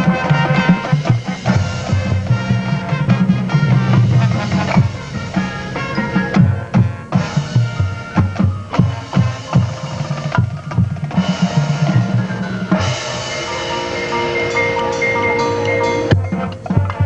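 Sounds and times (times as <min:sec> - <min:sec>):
marching band playing: 0:00.0 - 0:17.0
bass drums striking: 0:01.1 - 0:09.0.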